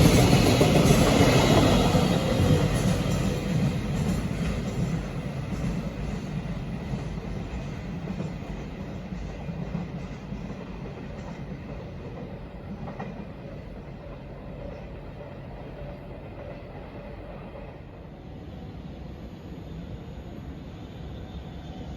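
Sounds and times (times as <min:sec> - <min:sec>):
freight train rumbling past: 0:00.0 - 0:21.9.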